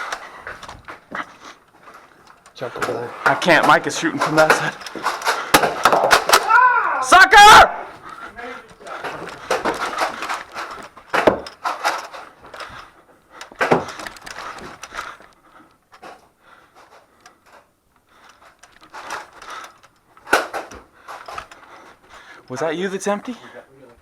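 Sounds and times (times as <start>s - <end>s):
rattle of small clicks: 9.8s - 16.0s, 18.2s - 21.8s.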